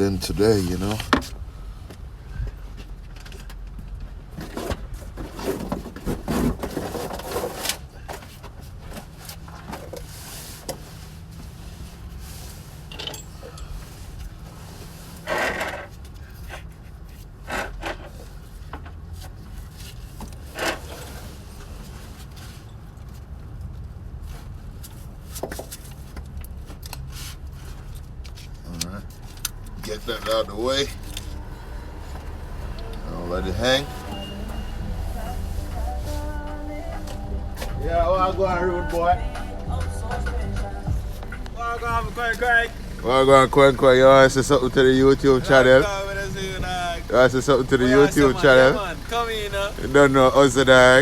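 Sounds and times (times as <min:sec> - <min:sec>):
steady low hum: 0:30.0 - 0:51.0.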